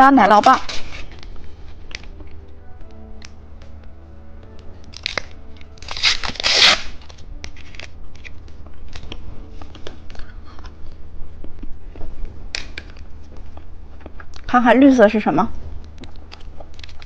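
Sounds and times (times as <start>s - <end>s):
plastic packaging crinkling: 4.9s - 9.2s, 16.1s - 17.0s
plastic tearing rustle: 4.9s - 9.2s, 16.2s - 17.0s.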